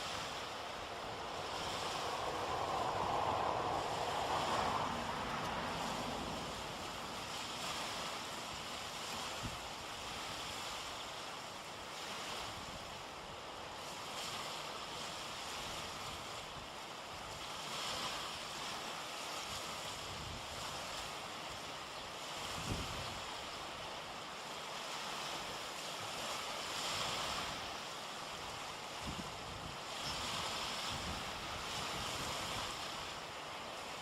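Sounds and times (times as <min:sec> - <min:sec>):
wind buffeting microphone: 0:00.0 - 0:10.6
sea surf washing on shore: 0:00.0 - 0:34.0.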